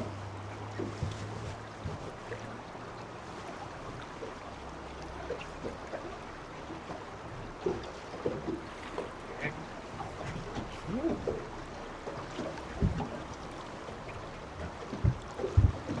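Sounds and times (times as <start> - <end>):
water lapping against hull: 0.0 - 16.0.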